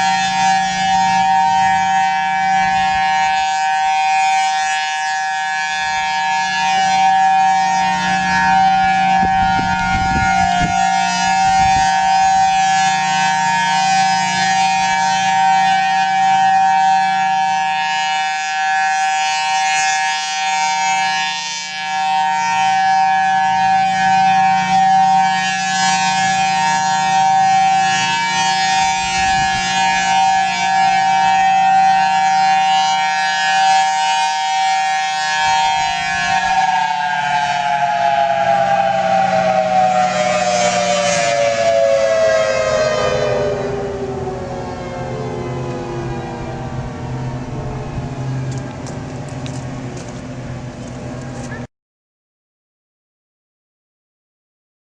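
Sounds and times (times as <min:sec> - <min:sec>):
high warning siren tone: 0:00.0 - 0:51.7
low hum: 0:42.4 - 0:51.7.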